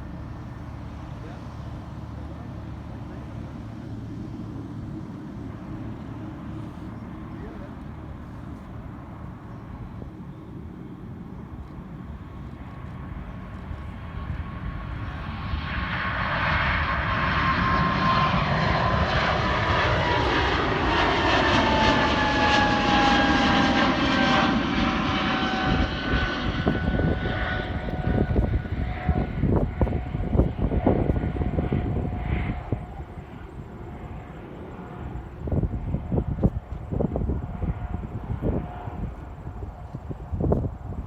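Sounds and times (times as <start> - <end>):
jet engines whining and roaring: 0.0 - 41.0.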